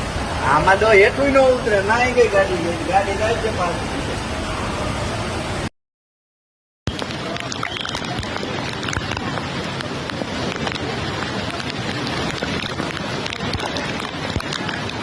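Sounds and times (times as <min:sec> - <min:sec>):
floodwater rushing: 0:00.0 - 0:05.7, 0:06.9 - 0:15.0
small crackles: 0:06.9 - 0:15.0.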